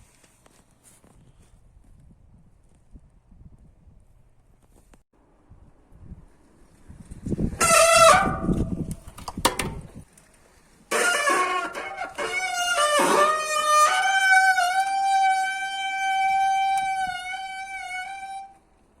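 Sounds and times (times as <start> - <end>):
bicycle brakes squealing: 7.6 - 8.6, 10.9 - 18.6.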